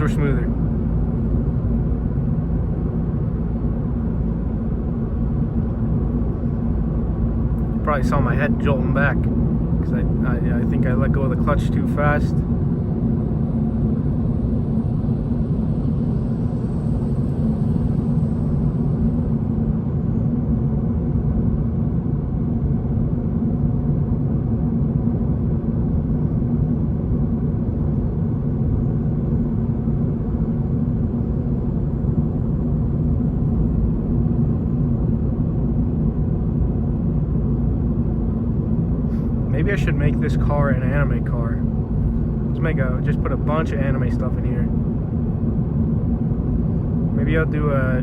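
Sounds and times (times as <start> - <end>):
car engine drone from cabin: 0.0 - 48.0.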